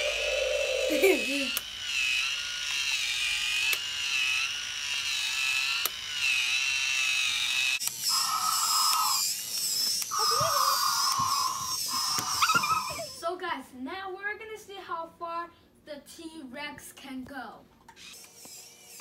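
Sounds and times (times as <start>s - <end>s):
toy gear motor whining: 0.0s - 13.2s, 17.9s - 19.0s.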